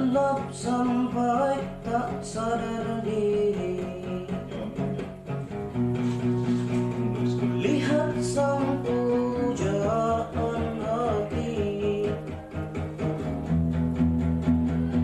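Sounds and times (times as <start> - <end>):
person singing: 0.0 - 5.1, 6.2 - 12.4
guitar accompaniment: 0.0 - 15.0.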